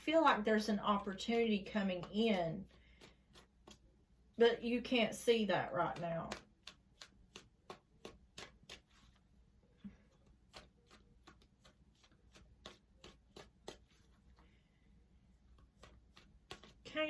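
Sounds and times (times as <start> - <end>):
cards being shuffled: 1.8 - 3.9, 5.8 - 14.5, 15.4 - 17.0.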